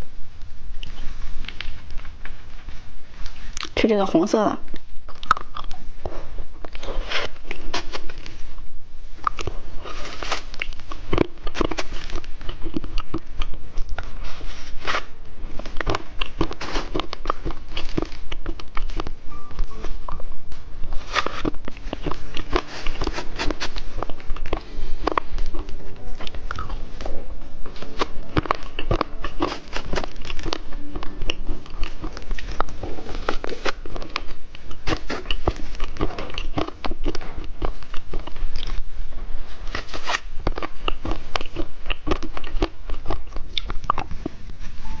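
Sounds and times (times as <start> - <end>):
crunching hard candy: 4.8 - 8.3, 9.2 - 38.9, 39.6 - 44.4.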